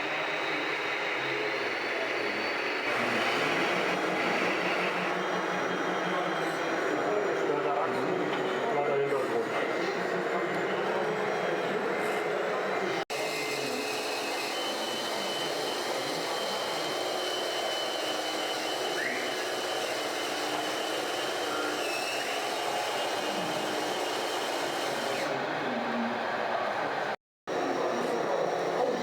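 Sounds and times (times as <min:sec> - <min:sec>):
small electric motors whirring: 0:13.2 - 0:25.3.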